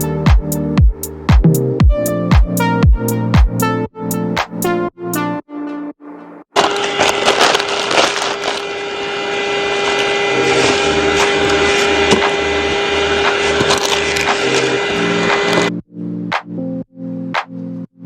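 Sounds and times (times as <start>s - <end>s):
debris crackling in vacuum: 6.6s - 14.9s
handheld vacuum cleaner running: 6.6s - 15.7s.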